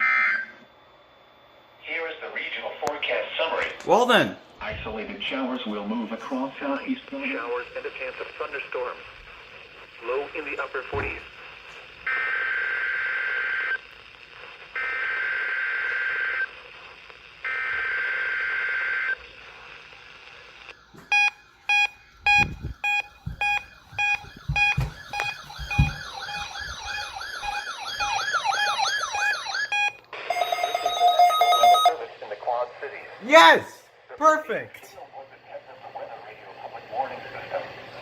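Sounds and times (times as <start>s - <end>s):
electronic alert alarm beeps: 21.1s - 31.9s
low thumps: 22.3s - 27.0s.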